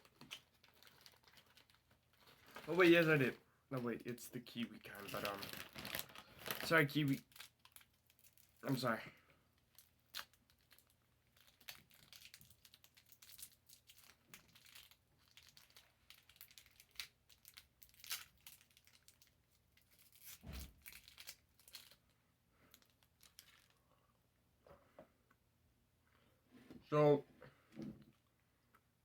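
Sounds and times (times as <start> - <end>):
snack wrapper crinkling: 0.0 - 2.9, 4.9 - 8.8, 9.6 - 23.8.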